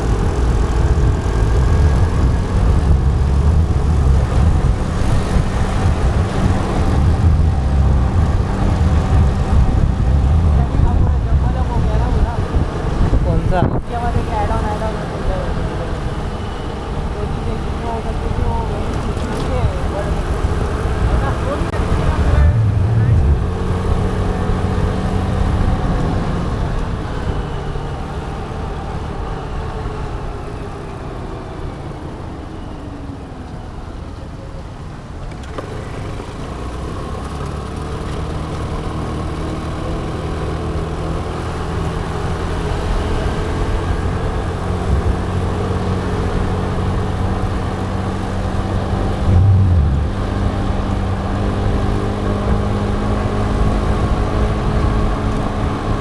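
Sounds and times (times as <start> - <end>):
road and wind noise: 0.0 - 56.0
scooter engine hum: 0.0 - 56.0
short low burst: 49.1 - 51.4.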